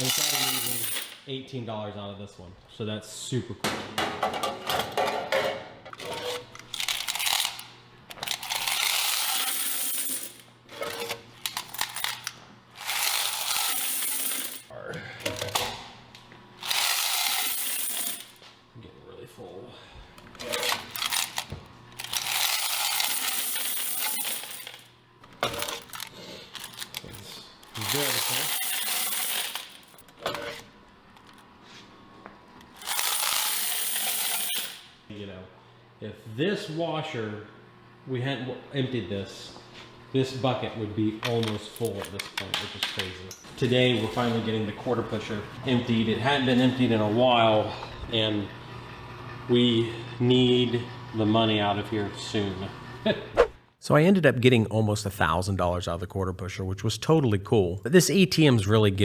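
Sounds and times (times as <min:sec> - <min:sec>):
coins poured into a bucket: 0:00.0 - 0:01.2, 0:08.3 - 0:10.4, 0:12.8 - 0:14.7, 0:16.6 - 0:18.3, 0:22.0 - 0:24.8, 0:27.7 - 0:30.0, 0:32.8 - 0:34.8.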